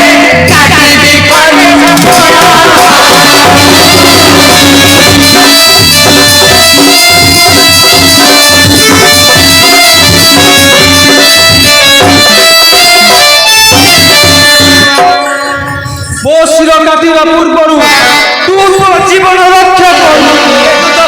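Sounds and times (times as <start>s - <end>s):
drum beat: 0.0s - 16.5s
sustained melodic line: 0.0s - 16.8s.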